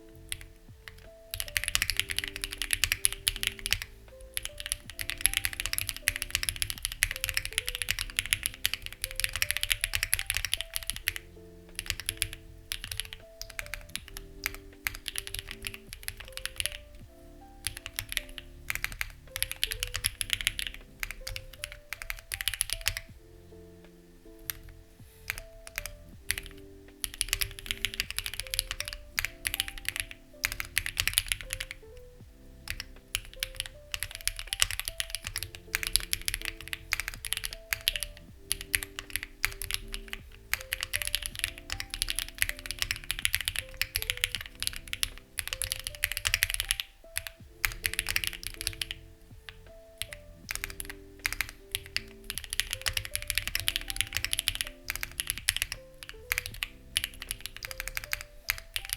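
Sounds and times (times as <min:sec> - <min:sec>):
soft background music: 0:00.0 - 0:58.9
mechanical keyboard key clacks: 0:25.3 - 0:31.8, 0:50.0 - 0:58.9.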